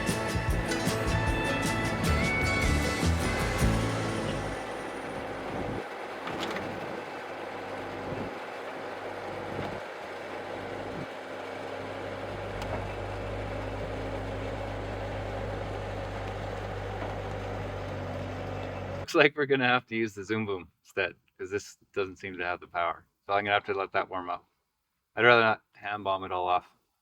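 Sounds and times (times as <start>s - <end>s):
heavy machine engine droning: 0.0s - 19.1s.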